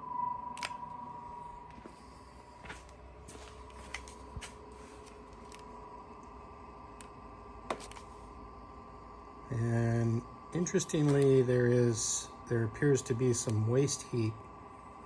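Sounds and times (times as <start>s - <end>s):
heater blower fan humming: 0.0s - 15.0s.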